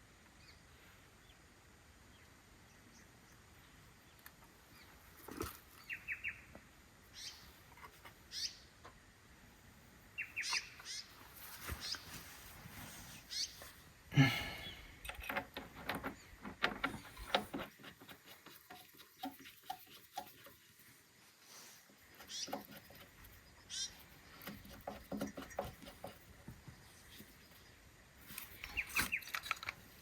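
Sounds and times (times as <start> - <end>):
bird chirps: 5.8 - 6.5, 10.2 - 11.2, 28.4 - 29.6.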